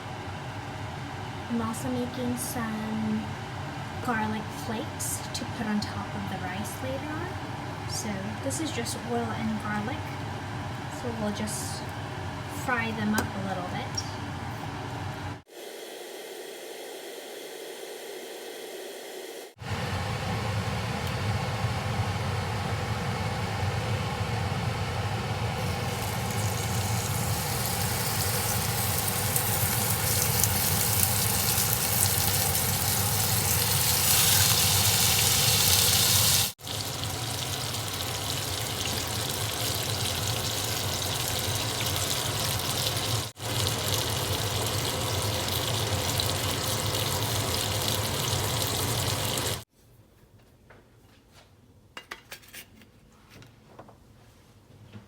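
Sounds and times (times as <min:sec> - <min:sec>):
food sizzling in hot oil: 0:25.5 - 0:49.6.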